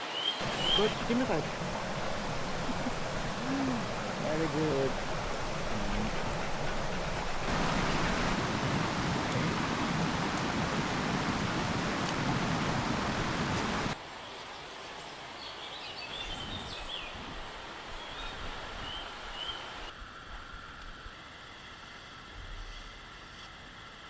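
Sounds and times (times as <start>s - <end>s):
rushing river water: 0.4s - 15.4s.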